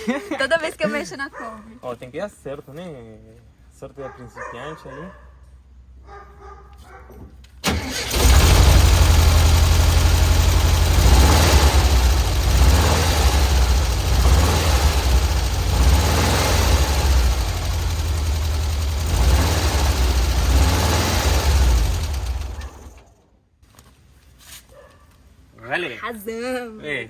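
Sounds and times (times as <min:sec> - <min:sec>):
van engine starting and idling: 0:07.6 - 0:23.2.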